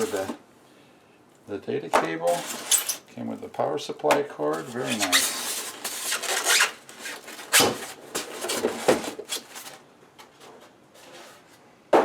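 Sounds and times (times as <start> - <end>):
packaging rustling: 2.1 - 3.1, 4.5 - 9.8.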